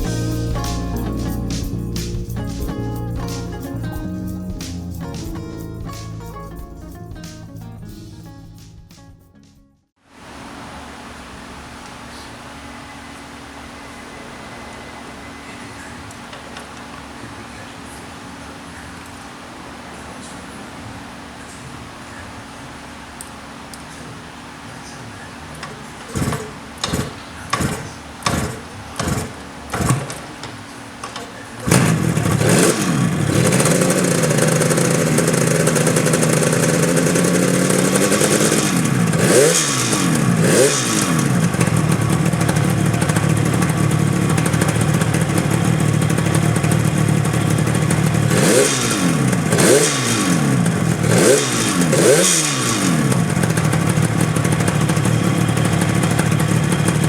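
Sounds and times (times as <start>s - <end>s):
motorcycle engine sputtering: 0.0s - 6.0s, 12.7s - 57.0s
motorcycle engine running: 0.0s - 7.3s, 11.1s - 57.0s
motorcycle throttle blips: 11.8s - 57.0s.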